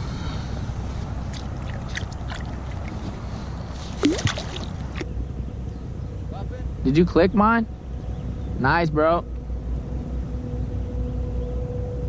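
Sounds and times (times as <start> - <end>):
steady low rumble: 0.0 - 12.0
water sloshing and lapping: 0.8 - 5.1
small clicks and splashes: 1.3 - 3.0.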